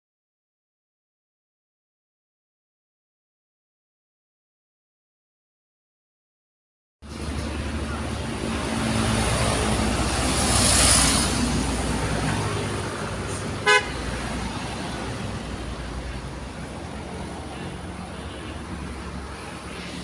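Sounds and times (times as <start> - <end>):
road traffic: 7.0 - 20.0
vehicle passing close: 7.0 - 20.0
vehicle horn toot: 13.6 - 14.1.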